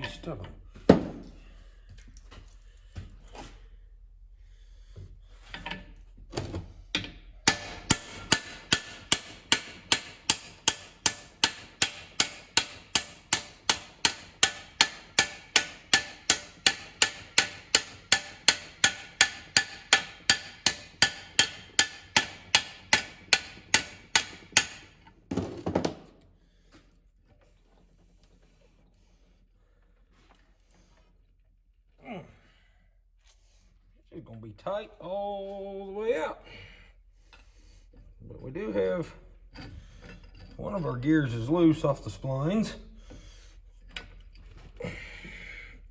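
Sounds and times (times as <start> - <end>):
hammer ringing on steel: 7.4 - 24.9.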